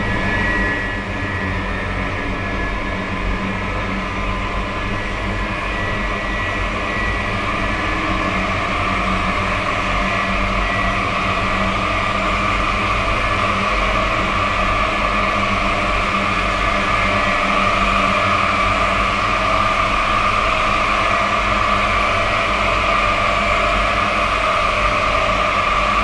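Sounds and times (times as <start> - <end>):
dense rumbling drone: 0.0 - 12.0.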